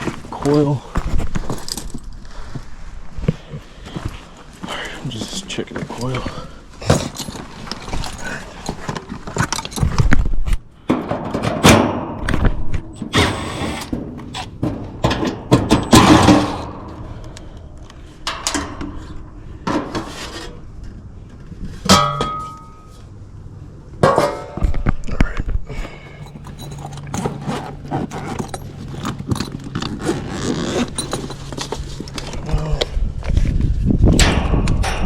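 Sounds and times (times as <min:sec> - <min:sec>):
metal clinks: 0:26.2 - 0:27.4, 0:28.1 - 0:29.7, 0:30.8 - 0:31.7.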